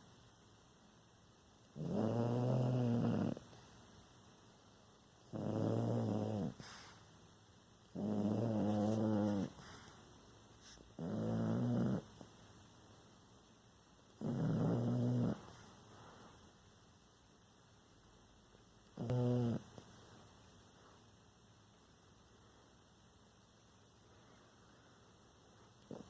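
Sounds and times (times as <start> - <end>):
pet snoring: 1.7 - 3.5, 5.2 - 7.0, 7.9 - 10.0, 10.6 - 12.1, 14.2 - 15.6, 19.0 - 19.8.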